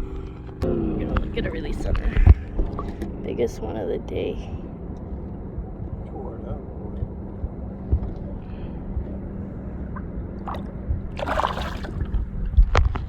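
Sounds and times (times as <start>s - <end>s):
water sloshing: 0.0s - 3.8s, 9.9s - 13.0s
steady low hum: 0.0s - 13.0s
water splash: 10.4s - 12.4s.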